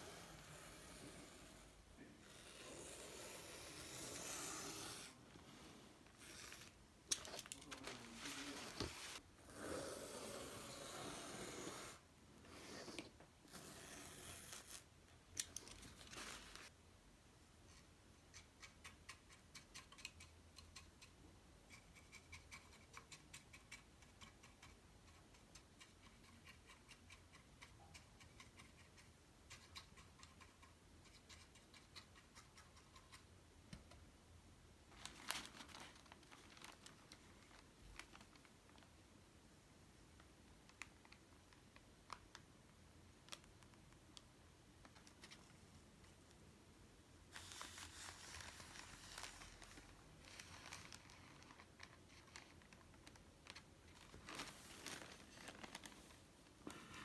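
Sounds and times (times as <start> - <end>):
rustling and scraping: 4.0 - 9.2, 47.3 - 57.0.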